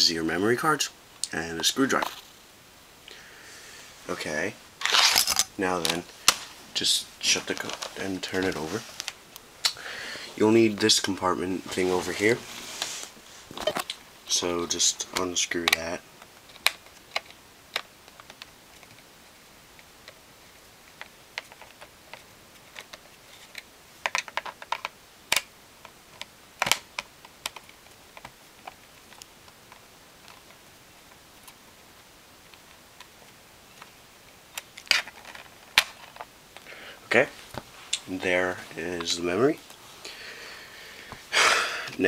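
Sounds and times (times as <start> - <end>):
plastic cover handled: 4.8 - 9.2, 34.6 - 39.8.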